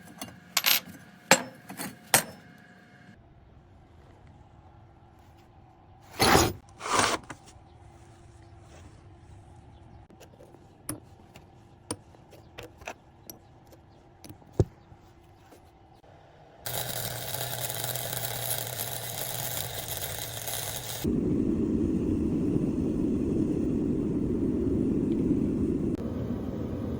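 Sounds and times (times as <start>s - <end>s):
metal clanks: 0.0s - 2.4s
tools tapping and clinking: 0.0s - 2.5s
machine humming: 16.7s - 26.9s.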